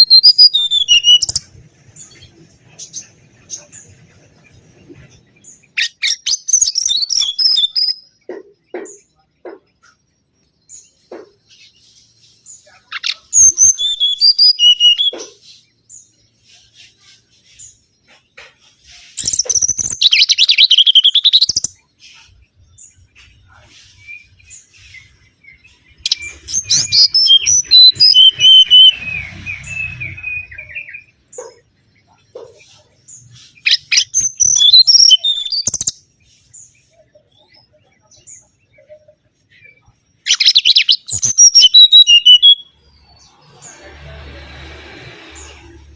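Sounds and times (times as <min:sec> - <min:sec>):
bird singing whistled notes: 0:00.0 - 0:02.2, 0:05.6 - 0:08.2, 0:12.6 - 0:15.2, 0:19.0 - 0:21.7, 0:23.0 - 0:31.2, 0:33.5 - 0:36.1, 0:37.2 - 0:42.8.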